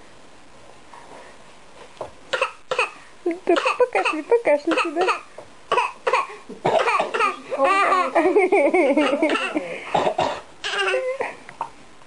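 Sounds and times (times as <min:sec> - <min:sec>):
adult coughing: 0:03.6 - 0:07.4, 0:09.1 - 0:10.5
baby laughing: 0:06.8 - 0:09.7, 0:10.6 - 0:11.4.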